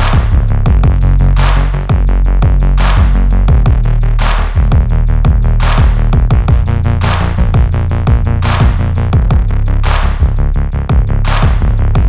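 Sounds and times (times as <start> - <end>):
snare or clap hits: 0.0 - 0.5, 1.4 - 1.9, 2.8 - 3.4, 4.2 - 4.7, 5.6 - 6.2, 7.0 - 7.5, 8.4 - 9.1, 9.8 - 10.3, 11.3 - 11.8
kick drums: 0.0 - 3.9, 4.6 - 6.8, 7.4 - 9.6, 10.2 - 12.0
heavy bass: 0.0 - 12.0
hi-hat ticks: 0.0 - 12.0.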